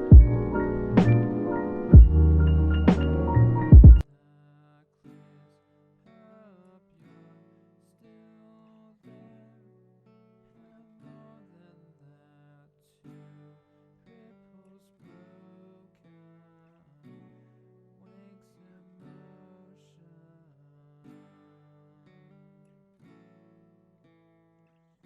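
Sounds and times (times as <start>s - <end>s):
plucked guitar music: 0.0s - 4.0s, 21.0s - 24.8s.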